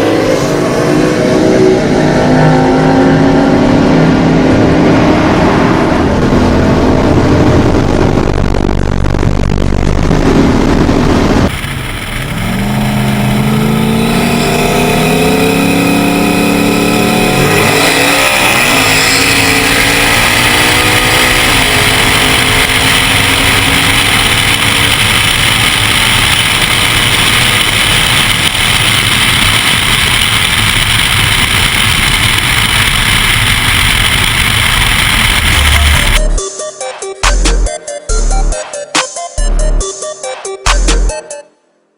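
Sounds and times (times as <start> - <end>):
race car engines at full throttle: 0.0 - 36.4
wind rush at speed: 3.2 - 36.2
gear shifts: 11.2 - 36.2.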